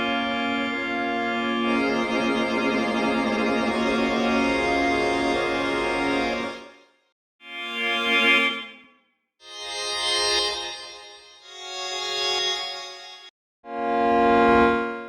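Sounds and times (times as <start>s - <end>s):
synthesizer pad chord: 13.7s - 15.0s.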